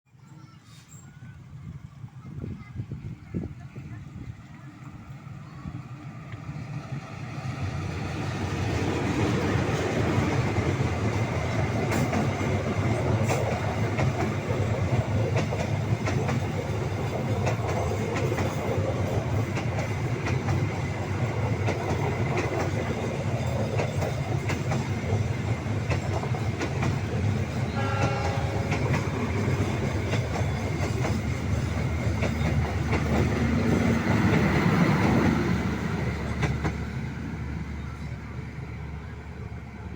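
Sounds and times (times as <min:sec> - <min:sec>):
train rumbling past: 0:00.2 - 0:39.9
brief steady tone: 0:27.7 - 0:29.6.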